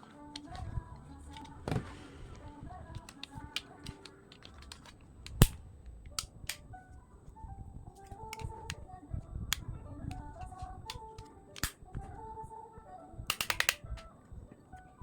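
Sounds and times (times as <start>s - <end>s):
faint background music: 0.0s - 15.0s
loud sharp click: 13.3s - 14.0s
small clicks and taps: 13.3s - 14.1s.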